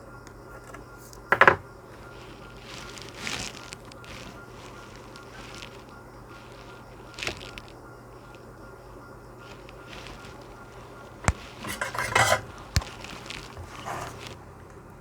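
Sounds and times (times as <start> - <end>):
small metal tools clinking: 9.9 - 14.3.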